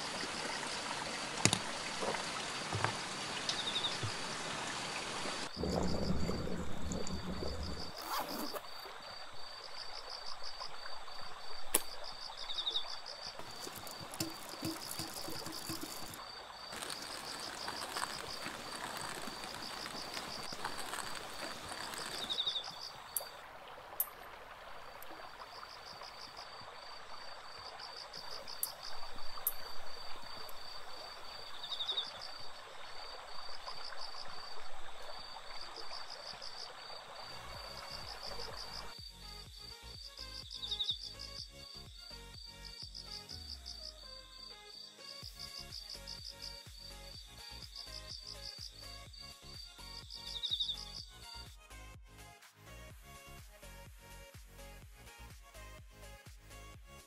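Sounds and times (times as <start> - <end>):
stream rushing: 0.0 - 9.6, 13.4 - 38.9
insects chirping in pulsing trills: 5.5 - 23.4, 25.1 - 51.2.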